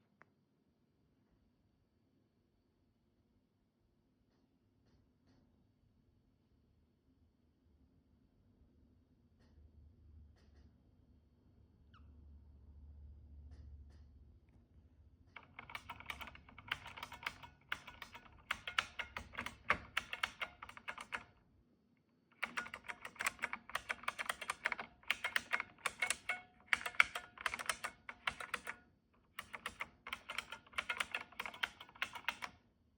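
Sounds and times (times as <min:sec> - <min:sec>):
clicky keyboard typing: 0:15.4 - 0:21.4, 0:22.4 - 0:32.6.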